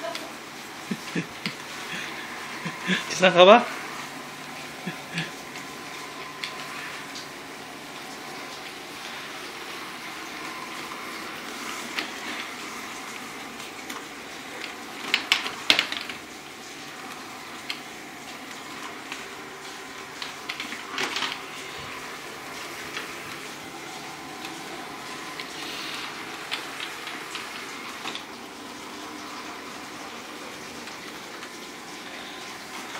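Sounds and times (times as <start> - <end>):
robot vacuum cleaner whirring: 0.0 - 32.9.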